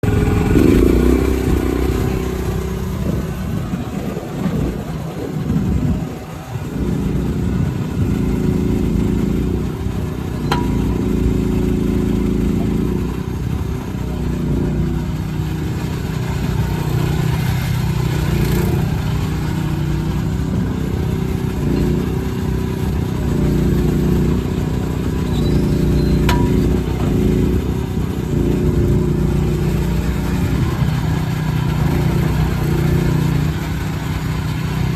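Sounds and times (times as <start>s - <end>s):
excavator engine running: 0.0s - 34.9s.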